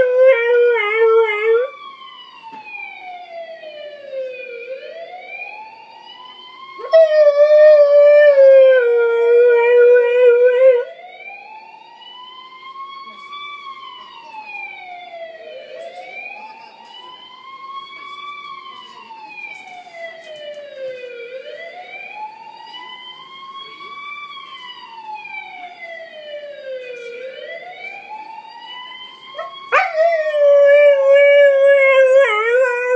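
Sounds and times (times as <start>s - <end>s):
police siren wailing: 0.0s - 32.9s
husky howling: 29.4s - 32.9s.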